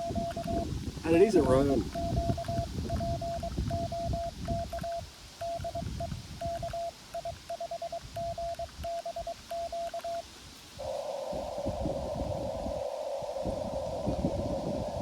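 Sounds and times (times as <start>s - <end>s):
morse code tone: 0.0s - 0.6s, 1.9s - 10.2s.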